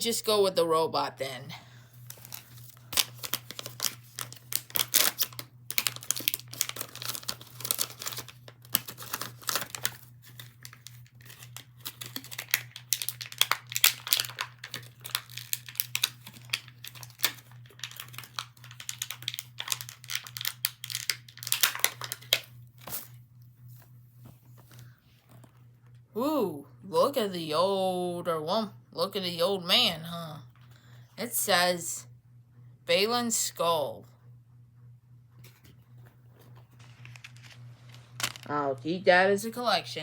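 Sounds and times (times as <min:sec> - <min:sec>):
steady low hum: 0:00.0 - 0:40.0
packaging crinkling and ripping: 0:02.0 - 0:23.1, 0:36.4 - 0:38.5.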